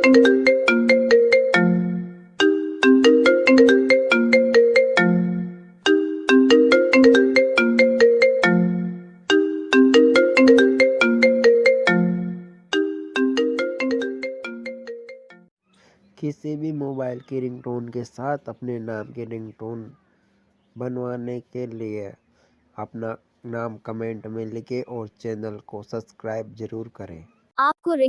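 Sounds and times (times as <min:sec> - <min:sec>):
phone ringtone melody: 0:00.0 - 0:15.5.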